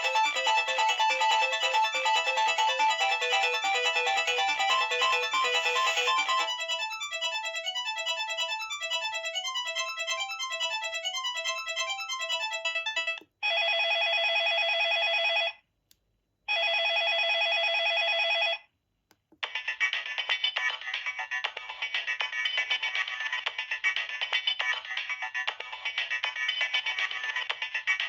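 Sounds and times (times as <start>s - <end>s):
mobile phone ringtone melody: 0.0s - 15.6s
steady phone ringing tone: 0.0s - 15.6s, 16.5s - 18.7s.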